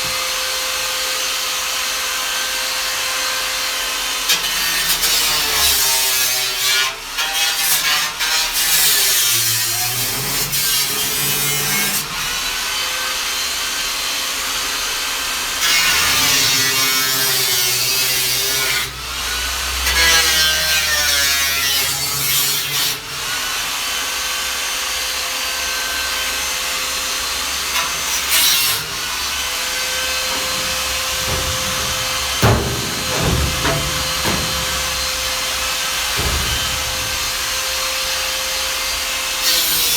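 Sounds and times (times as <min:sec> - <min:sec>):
power tool cutting steel: 0:27.8 - 0:38.8
knocks: 0:29.9 - 0:38.3.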